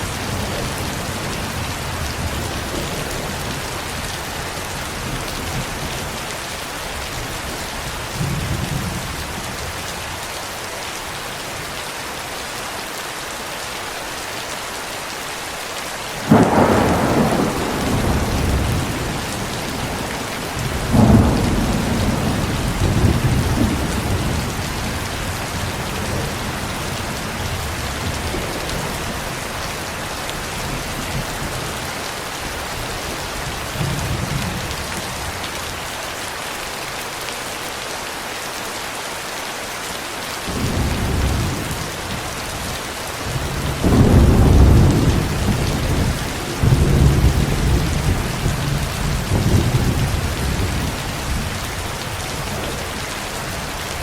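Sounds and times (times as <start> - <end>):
steady rain: 0.0 - 54.0
rolling thunder: 16.2 - 29.8, 43.3 - 52.8.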